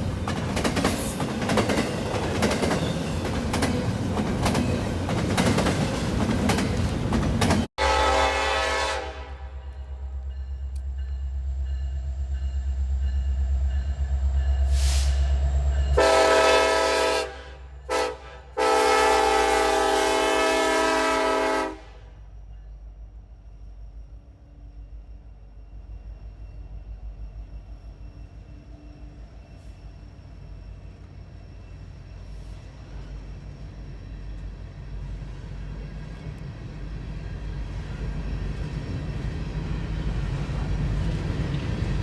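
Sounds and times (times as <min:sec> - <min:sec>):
diesel locomotive engine throbbing: 0:00.0 - 0:42.0
train air horn blasts: 0:07.8 - 0:10.1, 0:14.7 - 0:15.3, 0:15.9 - 0:22.2.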